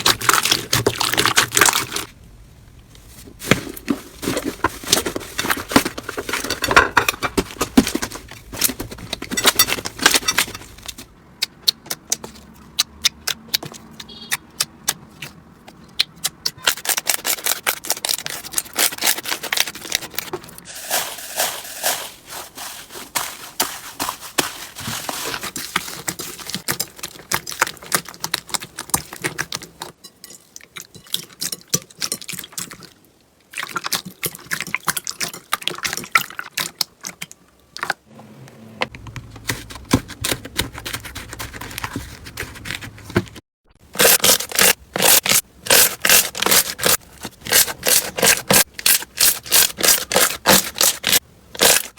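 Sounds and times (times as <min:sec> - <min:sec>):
slime crackling and squishing: 0:00.0 - 0:02.2, 0:16.6 - 0:29.9, 0:43.9 - 0:51.9.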